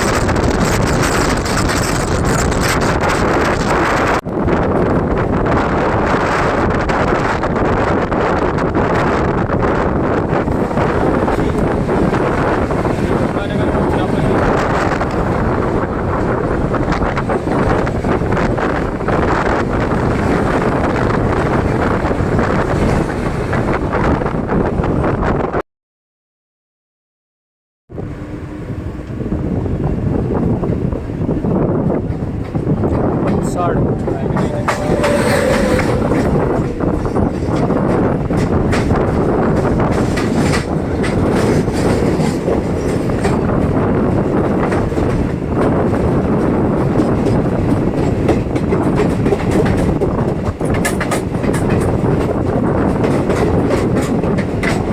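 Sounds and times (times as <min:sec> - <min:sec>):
train running on rails: 0:00.0 - 0:25.6, 0:27.9 - 0:54.9
wind buffeting microphone: 0:00.0 - 0:25.6, 0:27.9 - 0:54.9
wheels clicking over rail joints: 0:31.9 - 0:54.9.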